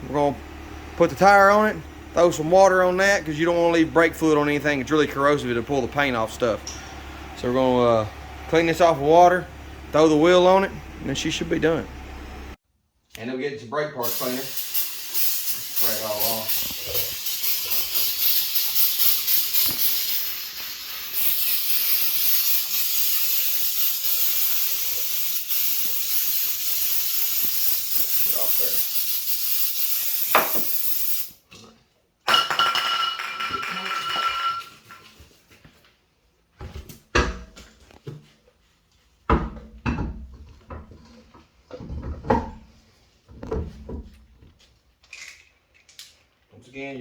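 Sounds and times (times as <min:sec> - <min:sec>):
aerosol can spraying hiss: 0:14.1 - 0:31.3.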